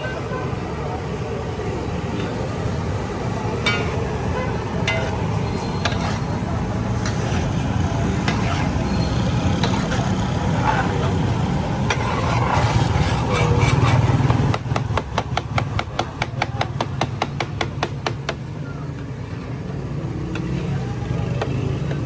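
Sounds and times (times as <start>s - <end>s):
voices: 0.0s - 14.2s, 20.2s - 22.0s
street traffic hum: 0.0s - 22.0s
metal spatulas striking griddle: 3.6s - 4.0s, 4.8s - 6.2s.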